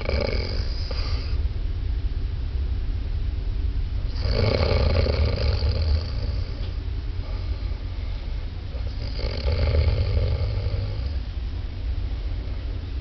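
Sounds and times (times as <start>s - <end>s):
man snoring: 0.0s - 1.4s, 4.1s - 6.7s, 8.8s - 11.2s
steady low rumble: 0.0s - 13.0s.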